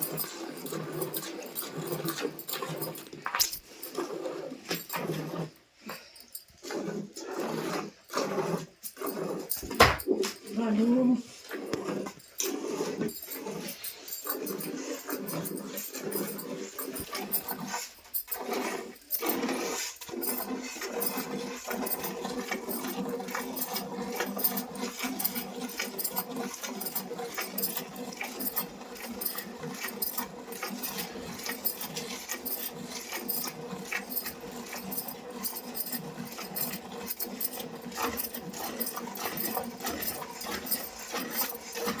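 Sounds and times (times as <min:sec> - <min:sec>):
milk squirting into a pail: 0:11.3 - 0:42.0.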